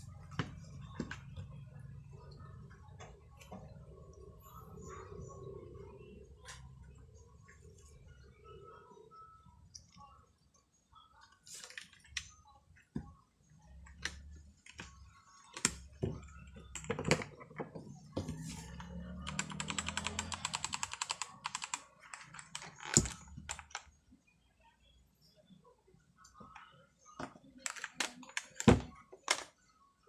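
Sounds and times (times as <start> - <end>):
mechanical keyboard keystrokes: 19.2 - 23.6.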